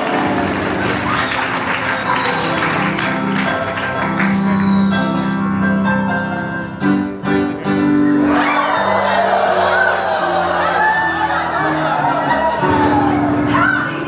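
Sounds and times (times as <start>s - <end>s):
instrumental show music: 0.0s - 14.0s
audience cheering and whooping: 8.2s - 13.9s.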